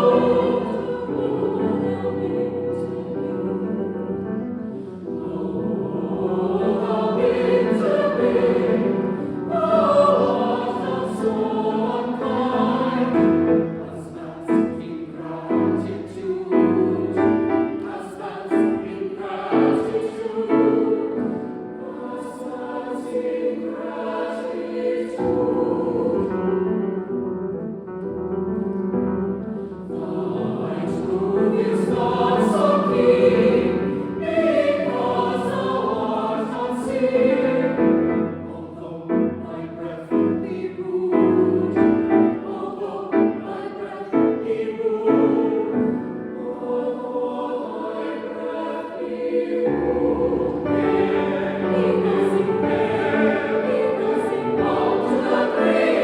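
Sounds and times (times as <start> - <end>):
choir singing: 0.0 - 27.3, 29.3 - 56.0
piano accompaniment: 0.0 - 56.0.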